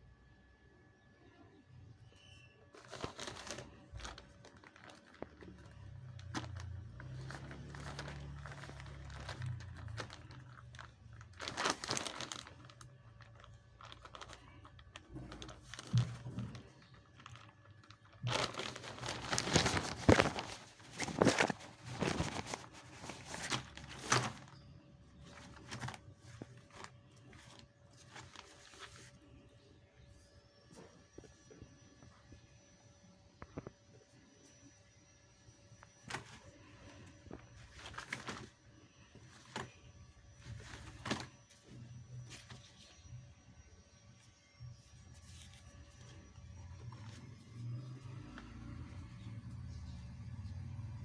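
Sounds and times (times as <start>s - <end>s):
packaging crinkling and tearing: 2.8s - 24.6s, 25.2s - 29.1s, 36.0s - 38.6s, 39.2s - 43.2s.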